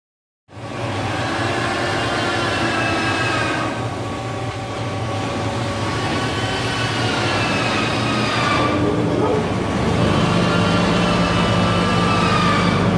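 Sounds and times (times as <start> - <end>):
wood aging machine running: 0.5 - 12.9.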